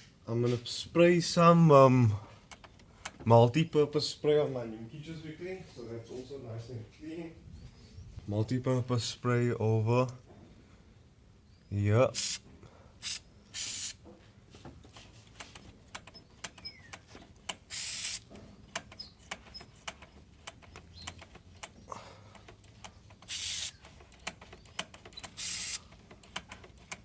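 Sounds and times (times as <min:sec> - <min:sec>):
aerosol spray hissing: 0:12.2 - 0:12.4, 0:13.0 - 0:14.0, 0:17.7 - 0:18.3, 0:23.3 - 0:23.8, 0:25.4 - 0:25.8.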